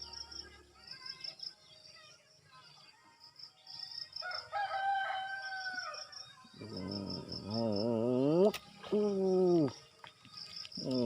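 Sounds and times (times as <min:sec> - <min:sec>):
insects trilling: 0:00.0 - 0:11.0
rooster crowing: 0:04.2 - 0:06.1.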